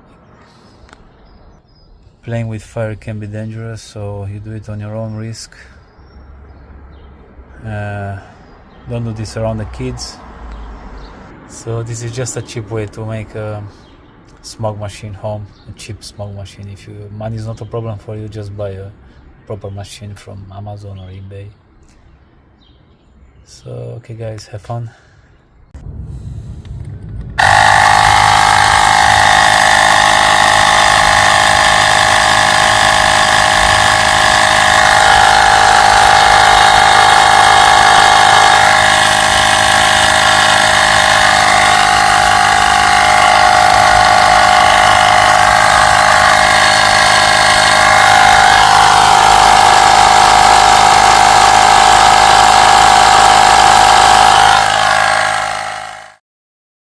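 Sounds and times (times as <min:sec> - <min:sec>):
electric air pump humming: 0:27.4 - 0:56.2.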